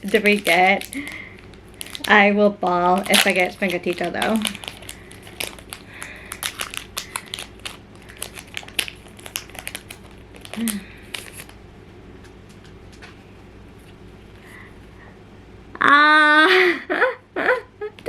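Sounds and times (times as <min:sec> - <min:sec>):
packaging crinkling and rustling: 0:00.0 - 0:11.6.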